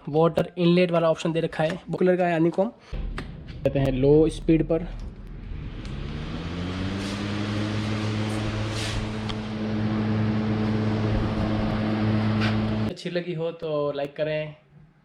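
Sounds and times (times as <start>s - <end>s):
rush of air: 4.8s - 12.9s
motor hum: 4.9s - 12.9s
air cooler fan running: 6.9s - 12.9s.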